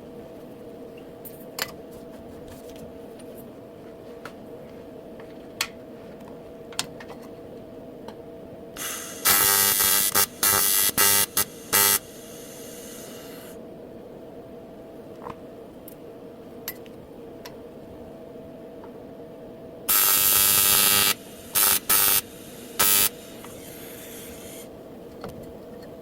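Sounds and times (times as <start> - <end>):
steady hum: 0.0 - 26.0
faint hiss: 8.8 - 13.6, 19.9 - 24.8
welding arc buzzing: 8.8 - 13.6, 19.9 - 24.8.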